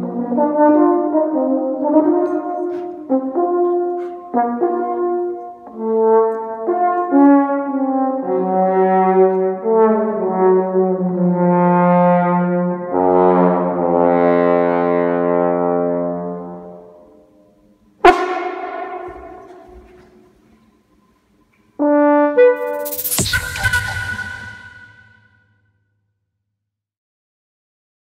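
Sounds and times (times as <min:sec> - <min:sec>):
deep bass note: 0:22.6 - 0:25.3.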